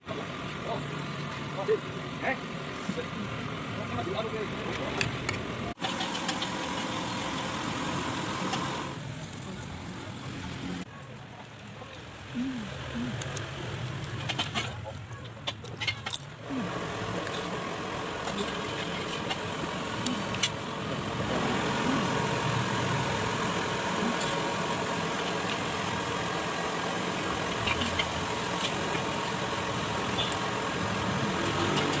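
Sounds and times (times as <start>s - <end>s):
rice sizzling in a pan: 21.0s - 32.0s.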